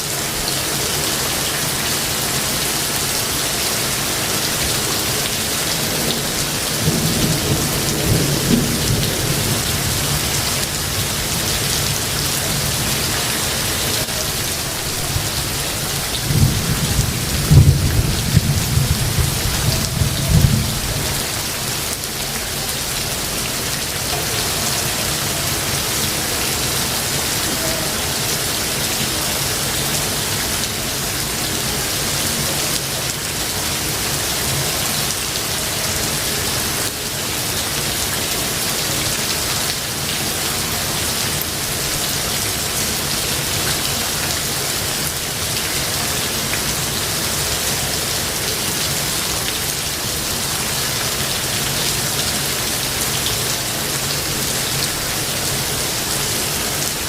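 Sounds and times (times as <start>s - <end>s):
heavy rain on foliage: 0.0s - 57.0s
thunder rumbling: 5.4s - 12.9s, 14.3s - 22.8s.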